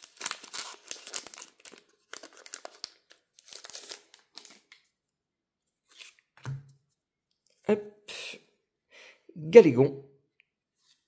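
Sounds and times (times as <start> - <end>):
foil wrapper crinkling and tearing: 0.0 - 4.8.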